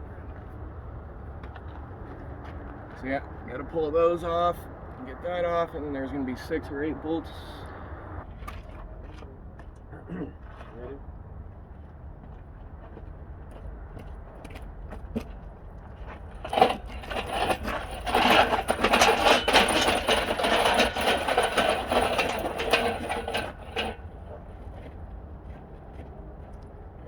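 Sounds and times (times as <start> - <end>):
metallic rattling and clattering: 16.0 - 24.9.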